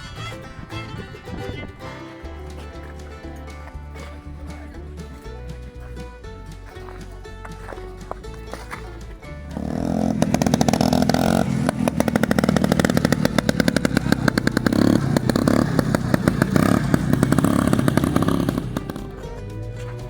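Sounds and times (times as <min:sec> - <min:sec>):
snowmobile engine revving: 0:00.0 - 0:20.0.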